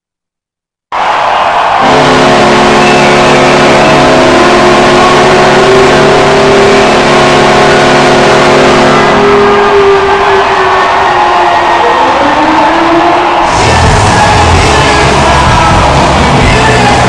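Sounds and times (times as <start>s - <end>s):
single tone: 1.8s - 6.2s
low horn chord: 1.8s - 10.0s.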